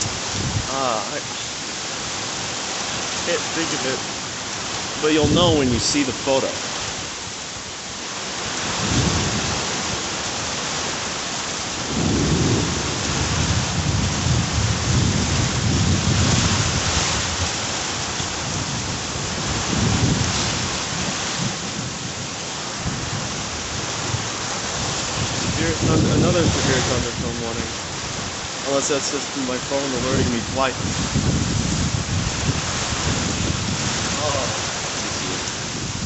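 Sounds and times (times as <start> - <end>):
heavy rain pouring: 0.0 - 36.0
thunder rumbling: 8.7 - 10.0, 11.8 - 28.3, 29.6 - 36.0.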